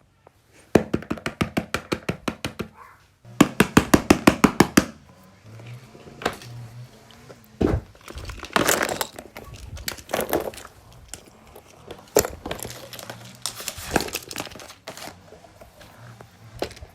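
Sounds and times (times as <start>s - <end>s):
toys clicking and knocking: 0.2s - 16.9s
crinkling and rustling: 4.4s - 16.9s.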